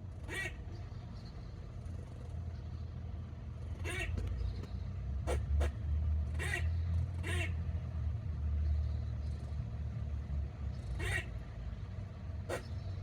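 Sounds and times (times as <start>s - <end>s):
squirrel calling: 12.5s - 12.8s.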